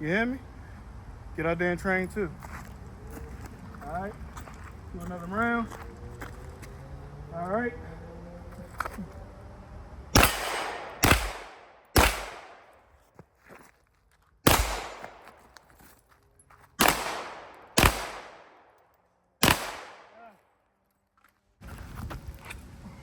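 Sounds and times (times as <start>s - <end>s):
gunshots with echo: 10.1s - 12.8s, 14.5s - 15.4s, 16.8s - 18.7s, 19.4s - 20.3s.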